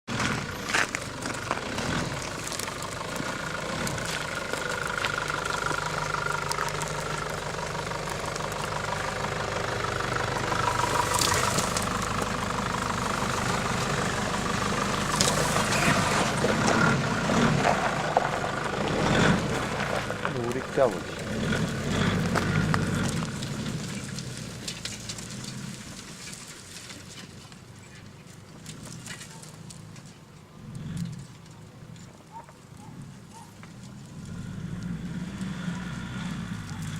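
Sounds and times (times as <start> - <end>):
vehicle engine running at low revs: 0.0 - 36.9.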